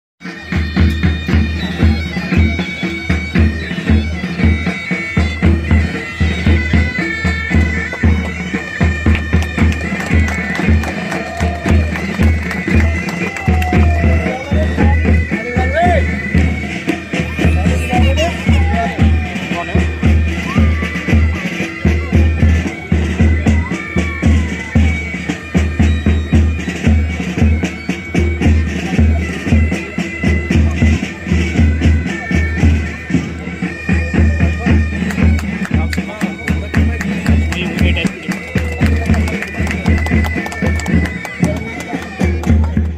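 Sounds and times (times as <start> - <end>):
bagpipes playing melody: 0.2 - 42.9
heavy drum beat: 0.2 - 42.9.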